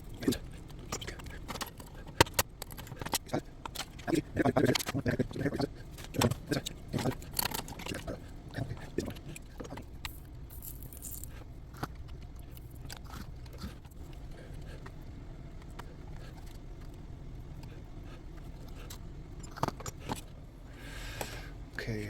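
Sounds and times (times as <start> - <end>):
tools clicking and scraping: 0.0 - 15.0, 18.4 - 20.4
steady low hum: 0.0 - 22.0.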